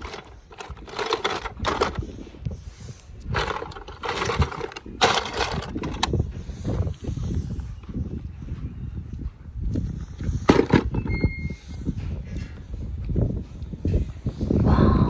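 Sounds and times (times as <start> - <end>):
toy cars scraping and rattling: 0.0 - 2.3, 3.2 - 6.2, 10.5 - 11.0.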